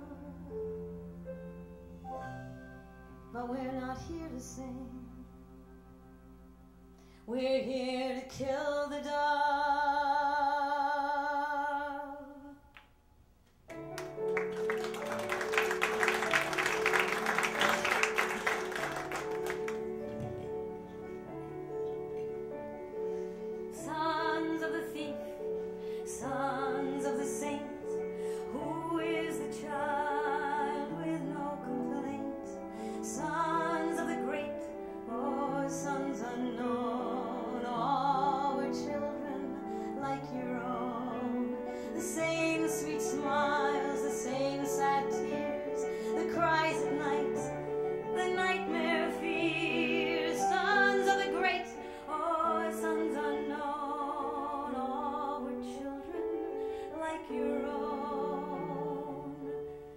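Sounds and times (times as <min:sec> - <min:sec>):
woman singing with vibrato: 0:03.3 - 0:05.4, 0:23.7 - 0:25.4, 0:26.0 - 0:59.6.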